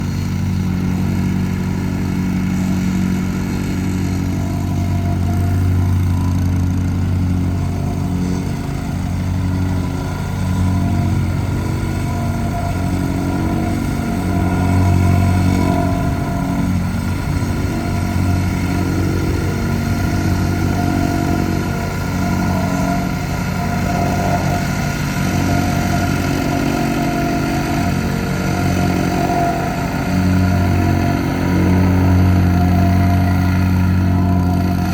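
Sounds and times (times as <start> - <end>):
plate compactor engine running: 0.0 - 34.9.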